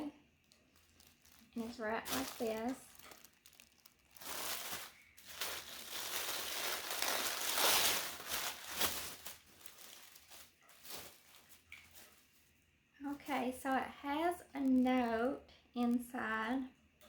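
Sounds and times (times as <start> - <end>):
plastic wrapping crinkling: 0.0 - 12.3, 14.5 - 15.2.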